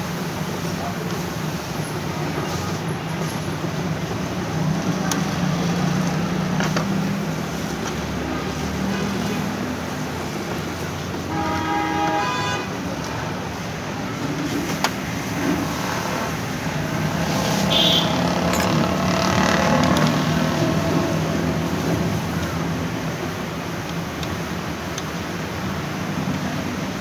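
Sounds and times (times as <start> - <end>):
traffic noise: 0.0 - 27.0
vehicle horn: 11.3 - 12.8, 17.4 - 19.9.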